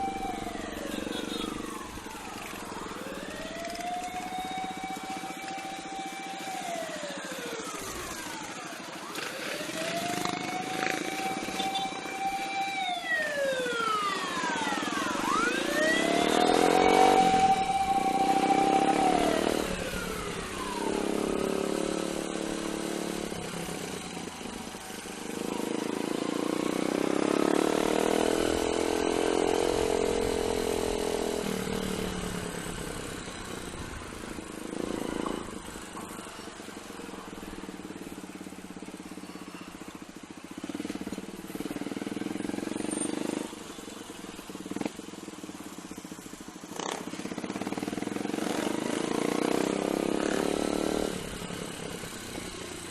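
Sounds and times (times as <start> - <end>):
motorcycle engine running: 14.7 - 52.9.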